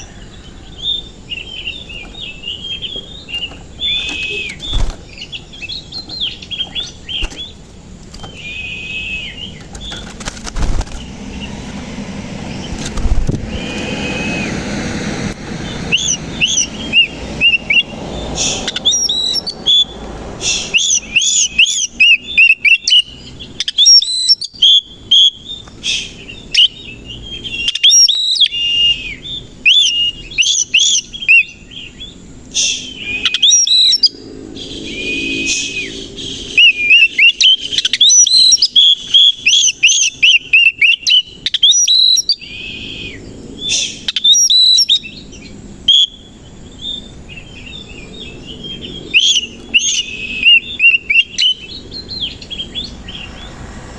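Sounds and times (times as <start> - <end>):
bird singing whistled notes: 0.0 - 53.6.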